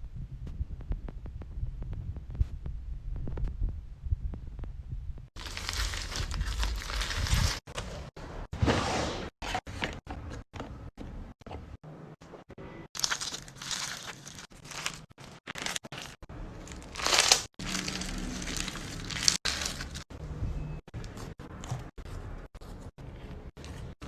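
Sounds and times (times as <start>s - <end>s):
slime squishing crackly: 5.4s - 7.7s, 13.0s - 20.1s.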